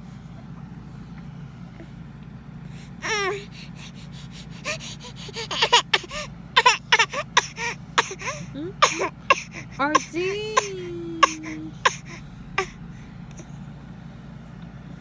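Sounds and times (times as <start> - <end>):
baby squealing: 4.5 - 12.7
baby coughing: 4.7 - 12.8.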